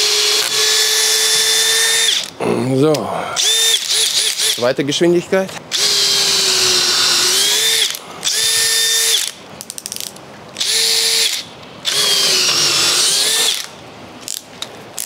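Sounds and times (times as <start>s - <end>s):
cordless drill whining: 0.0s - 2.3s, 3.4s - 4.6s, 5.7s - 9.4s, 10.6s - 13.7s.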